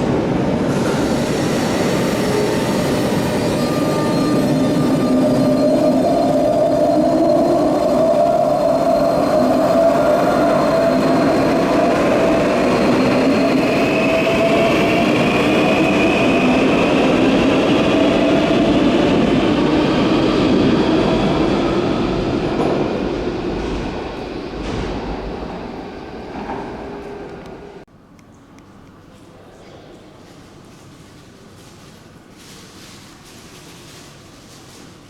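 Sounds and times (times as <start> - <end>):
rumble of train wheels: 0.0 - 27.9.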